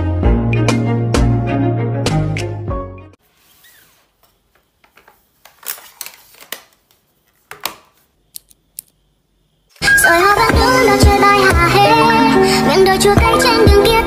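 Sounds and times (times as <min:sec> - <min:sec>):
background music: 0:00.0 - 0:03.2, 0:09.8 - 0:14.0
small objects clicking and scraping: 0:08.3 - 0:09.0.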